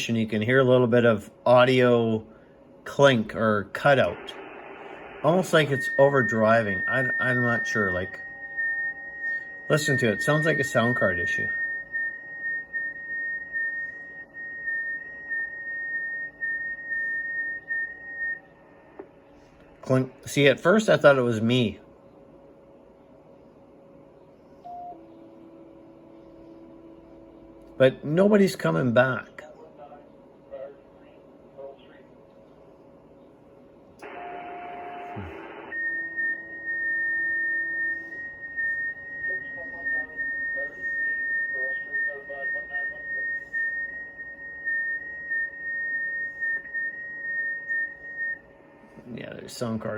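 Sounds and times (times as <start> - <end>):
high whistling radio tone: 2.9 - 21.8, 34.0 - 49.9
radio receiver hiss: 3.0 - 8.3, 34.0 - 44.2.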